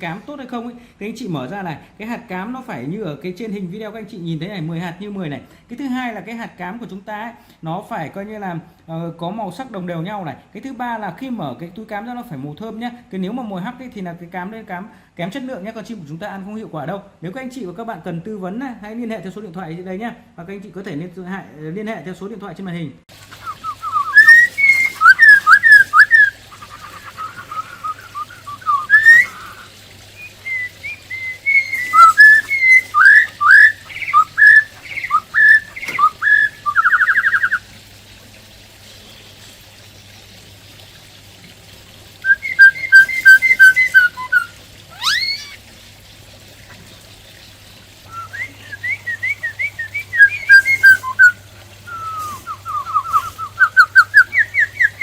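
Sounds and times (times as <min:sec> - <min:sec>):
bird whistling and trilling: 0:23.4 - 0:37.7, 0:42.2 - 0:45.6, 0:48.1 - 0:55.0.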